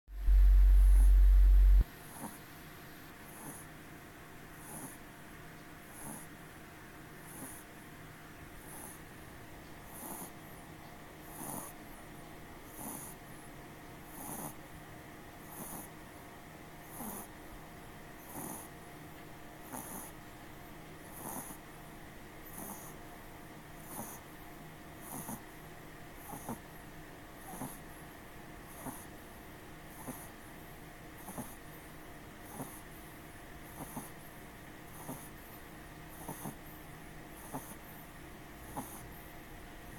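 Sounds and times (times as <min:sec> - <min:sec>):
pet snoring softly: 0:00.2 - 0:03.8, 0:04.5 - 0:05.1, 0:05.8 - 0:06.6, 0:07.2 - 0:07.8, 0:08.6 - 0:14.8, 0:15.4 - 0:16.1, 0:16.8 - 0:18.8, 0:19.6 - 0:20.2, 0:21.0 - 0:21.8, 0:22.4 - 0:23.1, 0:23.8 - 0:30.6, 0:31.2 - 0:39.5.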